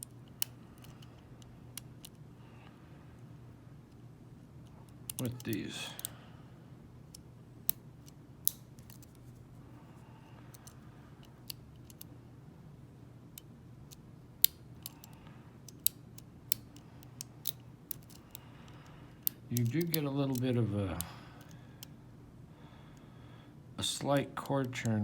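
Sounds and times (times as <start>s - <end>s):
faint low hum: 0.0s - 25.0s
lock pick metal clicks: 4.6s - 6.1s, 7.1s - 9.1s, 10.5s - 10.8s, 11.4s - 12.1s, 14.4s - 21.9s.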